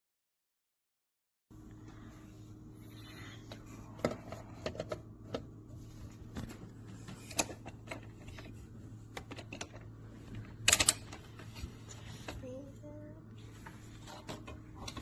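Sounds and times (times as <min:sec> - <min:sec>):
low steady hum: 0:01.5 - 0:15.0
plastic toy clicks and knocks: 0:10.7 - 0:11.2.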